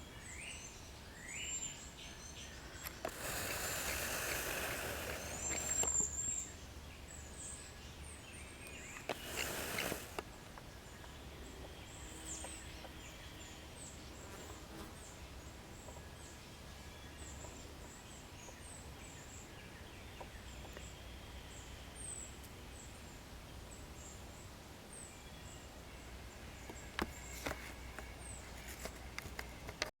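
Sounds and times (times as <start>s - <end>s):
outdoor background noise: 0.0s - 29.9s
birds calling high thin notes: 2.2s - 14.0s
burst of noise: 3.0s - 6.0s, 9.1s - 10.2s.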